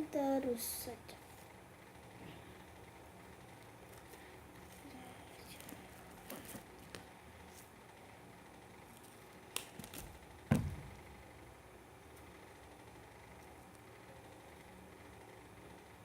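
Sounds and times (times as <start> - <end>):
tape rustling and clicks: 3.5 - 7.7, 8.8 - 11.0
dull thump: 10.5 - 11.0.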